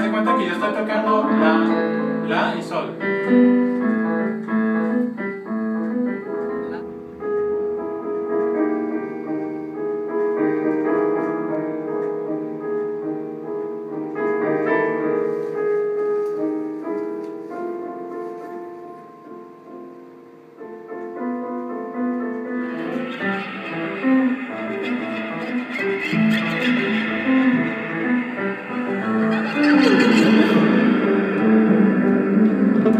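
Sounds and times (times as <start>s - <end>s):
improvised piano chords: 0.0s - 32.9s
bright busy instrumental layer: 22.6s - 32.9s.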